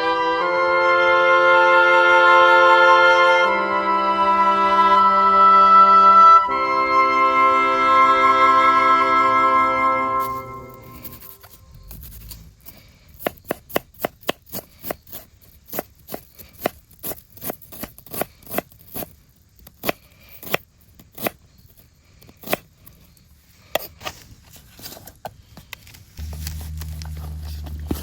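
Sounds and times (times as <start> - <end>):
low steady hum: 6.3 - 14.0, 25.8 - 28.0
knife chopping on cutting board: 13.2 - 16.8.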